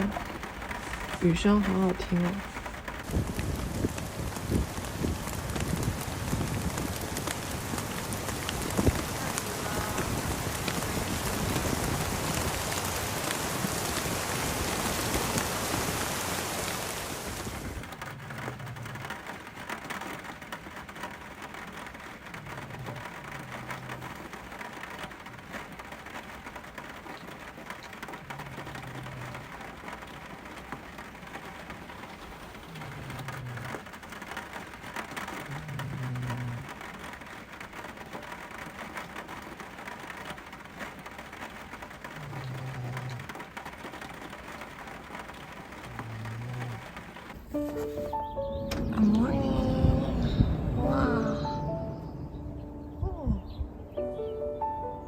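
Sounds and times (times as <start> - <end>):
low rumbles: 0.0 - 16.2, 45.8 - 55.0
heavy rain falling: 0.0 - 54.9.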